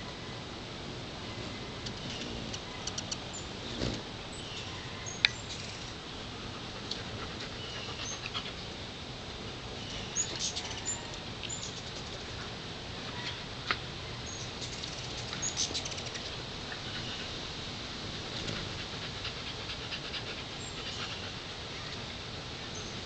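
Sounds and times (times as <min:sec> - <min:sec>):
hummingbirds chipping and squeaking: 0:00.0 - 0:23.0
sharp click: 0:01.8 - 0:03.2.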